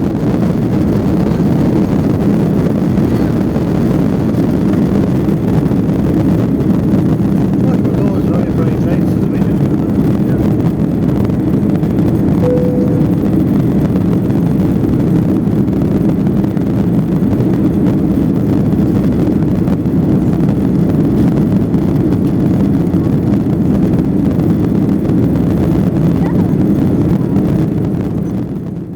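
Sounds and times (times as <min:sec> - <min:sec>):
jet engine and airflow noise in cabin: 0:06.4 - 0:11.1, 0:18.0 - 0:28.7.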